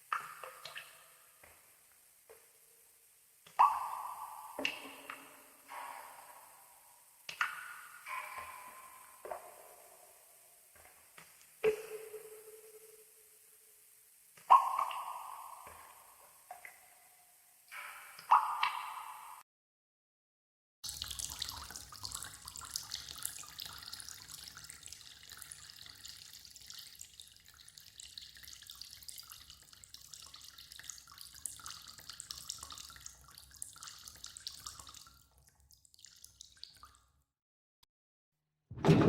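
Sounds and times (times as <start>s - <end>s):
water drips: 0.0s - 19.4s, 20.8s - 37.3s
tap water running into a sink: 20.8s - 37.0s.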